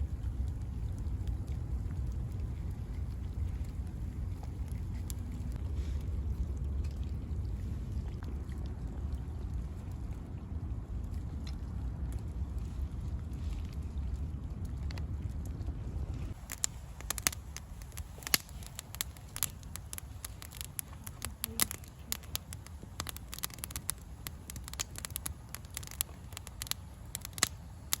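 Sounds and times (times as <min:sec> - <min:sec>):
low rumble: 0:00.0 - 0:28.0
campfire crackling and popping: 0:16.3 - 0:28.0.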